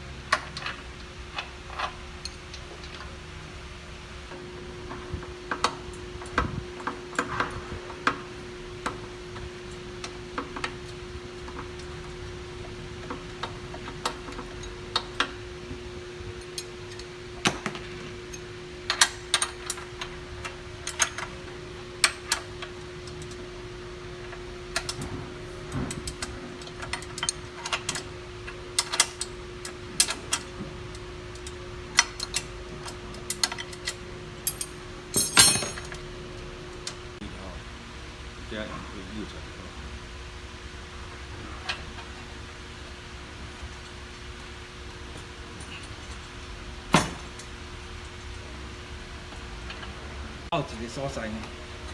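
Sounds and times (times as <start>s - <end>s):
hand tools clicking and clinking: 33.3s - 36.0s.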